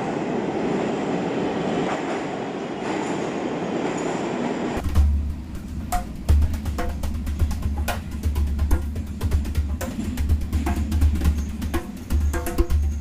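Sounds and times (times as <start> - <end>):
train wheels rumbling on rails: 0.0 - 13.0
drumming over deep bass: 4.8 - 13.0.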